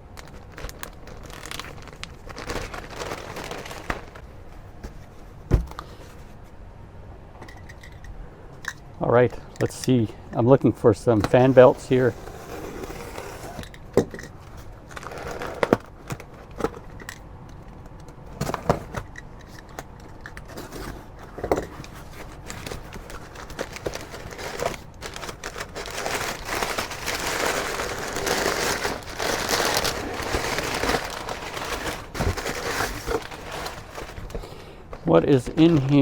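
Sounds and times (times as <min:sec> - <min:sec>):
plastic packaging crinkling: 0:00.0 - 0:04.3, 0:14.6 - 0:16.0, 0:21.8 - 0:36.0.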